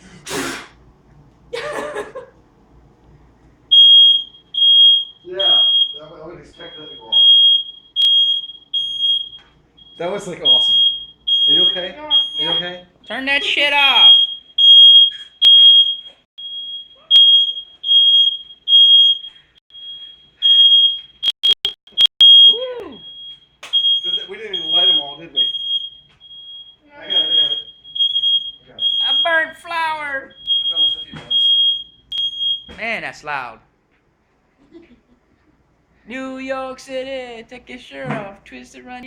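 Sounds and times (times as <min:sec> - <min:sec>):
smoke alarm beeping: 0:03.7 - 0:32.8.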